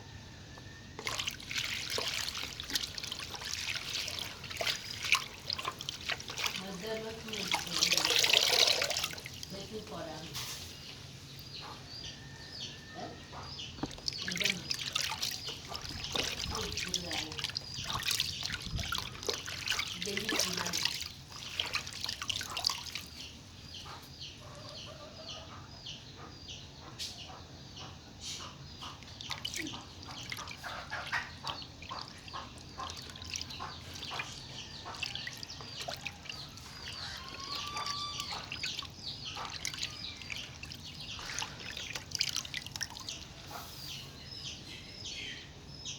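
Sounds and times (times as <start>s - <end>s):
water trickling in a pot: 0.9s - 11.6s, 13.7s - 23.8s, 28.8s - 43.6s
small clicks and splashes: 1.0s - 10.6s, 13.7s - 24.0s, 28.8s - 43.6s.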